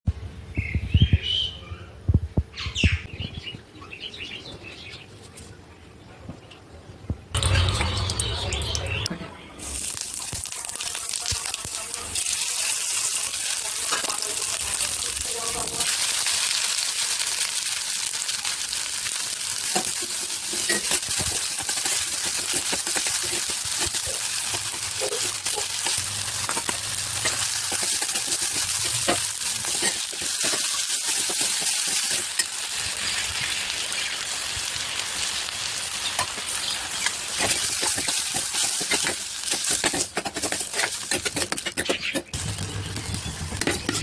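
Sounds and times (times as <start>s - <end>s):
food sizzling in hot oil: 9.6s - 44.0s.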